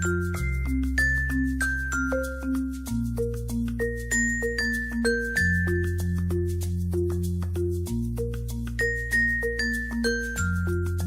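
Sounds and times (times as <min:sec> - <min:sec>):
bell-like melody with beat: 0:00.0 - 0:11.0.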